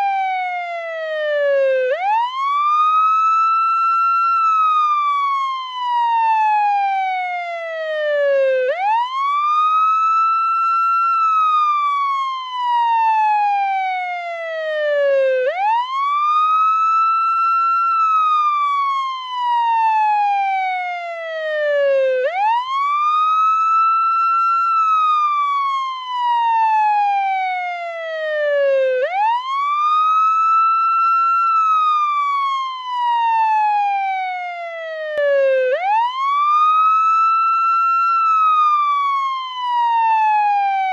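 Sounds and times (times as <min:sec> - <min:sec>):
ambulance wail siren: 0:00.0 - 0:40.9.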